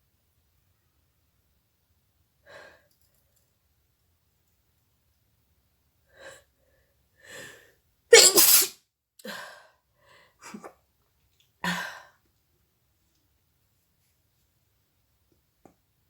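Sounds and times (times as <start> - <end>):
woman sneezing: 8.1 - 8.7.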